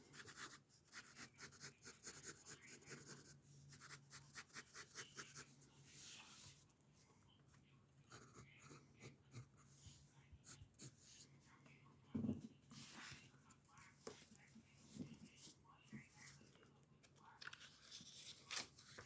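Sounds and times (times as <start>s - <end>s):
pencil scratching on paper: 0.0s - 6.6s, 8.1s - 11.3s.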